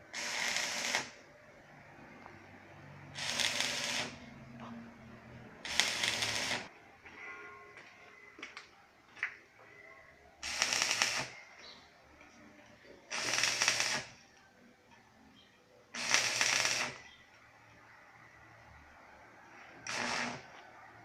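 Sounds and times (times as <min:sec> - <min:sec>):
electric arc crackling: 0:00.1 - 0:01.2, 0:03.2 - 0:04.2, 0:05.6 - 0:06.7, 0:10.4 - 0:11.4, 0:13.1 - 0:14.2, 0:16.0 - 0:17.0, 0:19.8 - 0:20.4.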